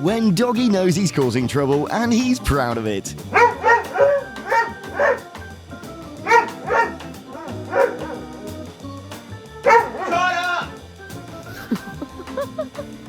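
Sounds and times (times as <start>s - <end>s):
background music: 0.0s - 13.0s
dog yipping: 3.3s - 5.4s, 6.2s - 8.3s, 9.6s - 10.6s.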